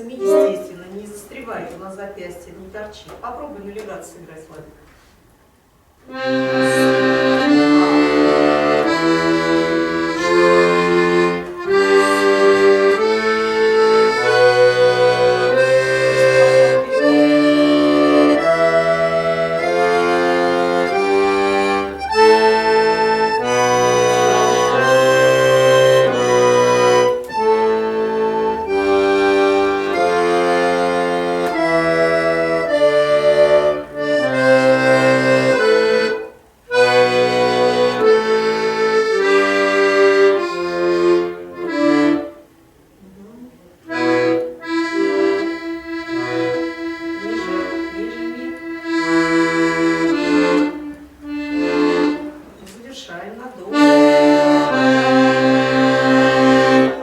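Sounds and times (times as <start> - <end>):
accordion playing a scale: 0.0 - 1.2, 6.0 - 42.8, 43.8 - 52.7, 53.6 - 57.0.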